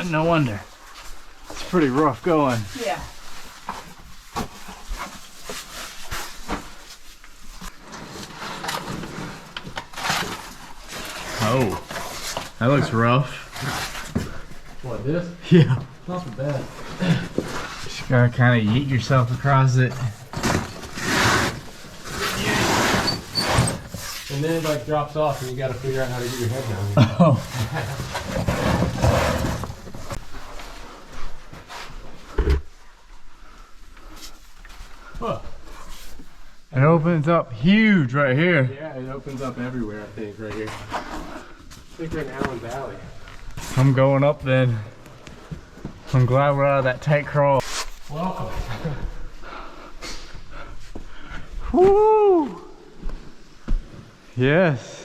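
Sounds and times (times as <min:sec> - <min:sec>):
clothing scraping on rock: 0:16.4 - 0:30.6.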